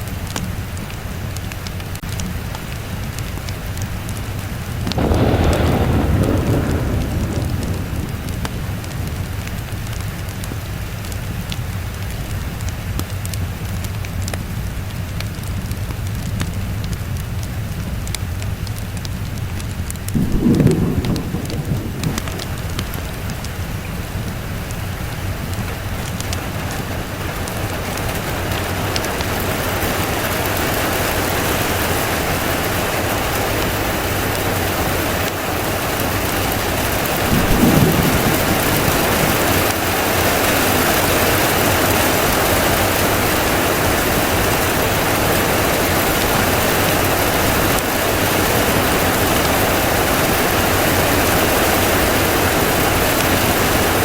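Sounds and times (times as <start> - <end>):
steady rain: 0.0 - 54.0
low rumble of thunder: 4.4 - 12.0, 15.5 - 54.0.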